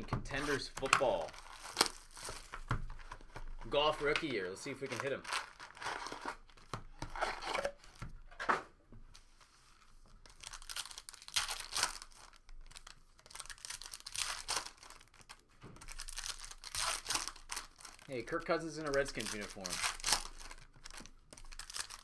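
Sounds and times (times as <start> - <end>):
wrappers tearing and crinkling: 0.3 - 2.6, 3.6 - 8.0, 10.2 - 22.0.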